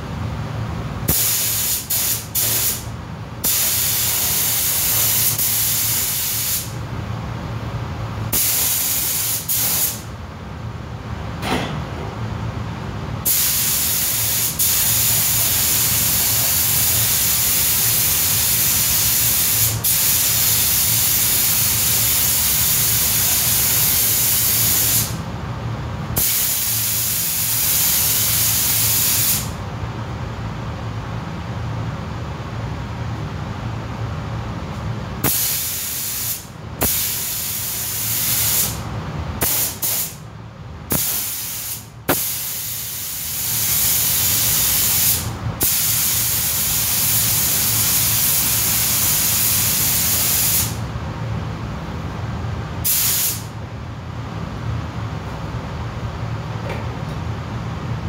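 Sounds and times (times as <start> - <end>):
steady low hum: 0.0 - 58.0
air spray gun hissing: 1.1 - 6.8, 8.3 - 10.0, 13.2 - 25.2, 26.2 - 29.5, 35.2 - 38.8, 39.4 - 40.2, 40.9 - 50.8, 52.8 - 53.5.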